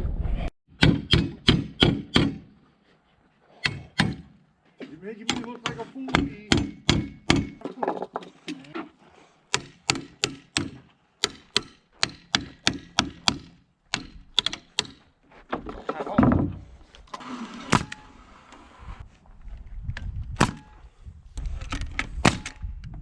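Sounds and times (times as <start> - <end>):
hammer driving nails into wood: 0.7 - 2.6, 3.6 - 4.4, 5.2 - 7.6, 9.5 - 15.1, 17.1 - 18.2, 20.4 - 20.8, 21.7 - 22.7
heavy thud: 17.6 - 18.1, 20.3 - 20.8.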